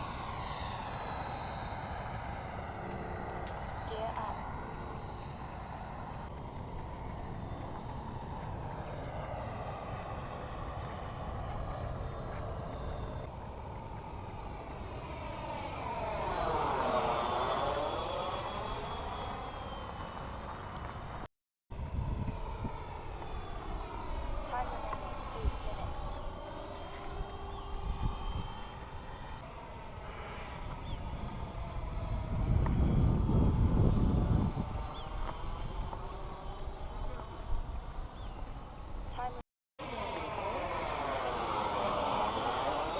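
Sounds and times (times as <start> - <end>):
electric ducted fan whining: 0.0 - 42.9
wind rumble on microphone: 0.0 - 42.9.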